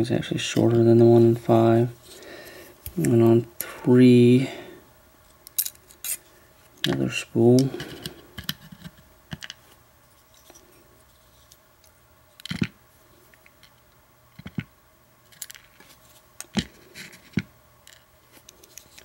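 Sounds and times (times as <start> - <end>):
small metal parts clicking: 5.4 - 6.2.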